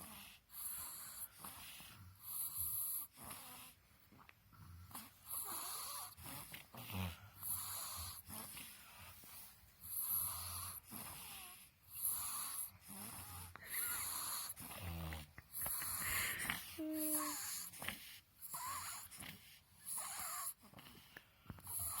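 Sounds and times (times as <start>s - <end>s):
baby snoring congested: 0.0s - 3.8s, 4.8s - 9.2s, 9.8s - 22.0s.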